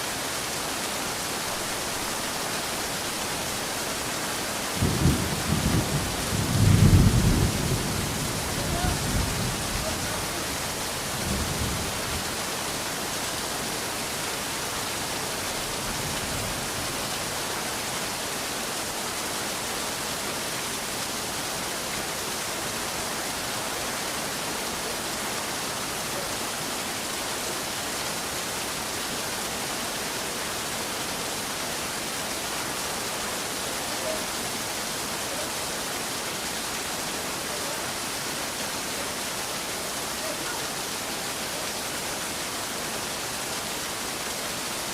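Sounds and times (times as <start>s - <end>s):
steady rain falling: 0.0s - 44.9s
low thunder rumble: 4.8s - 9.8s.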